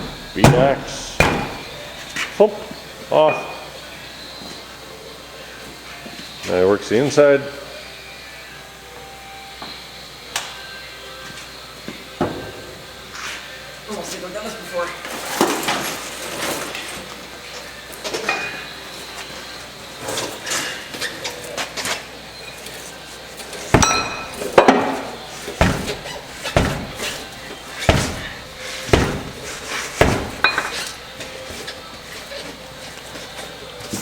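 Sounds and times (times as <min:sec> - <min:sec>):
hammer striking metal: 0:00.0 - 0:02.0, 0:23.8 - 0:31.0
light knocks and clinks: 0:23.8 - 0:31.0.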